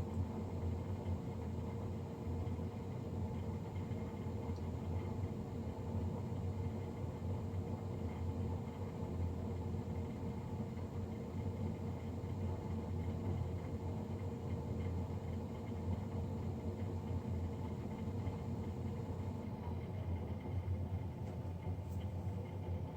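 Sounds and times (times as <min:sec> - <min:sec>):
boiler blower fan humming: 0:00.0 - 0:22.9
faint steady whine: 0:00.0 - 0:22.9.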